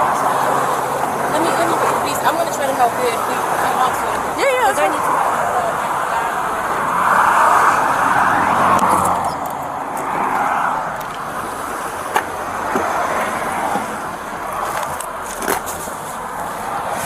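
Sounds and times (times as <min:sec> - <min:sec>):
car interior road hum: 0:00.0 - 0:17.0.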